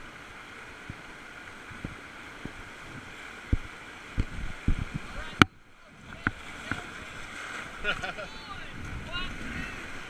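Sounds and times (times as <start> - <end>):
whitewater rushing: 0.0 - 10.0.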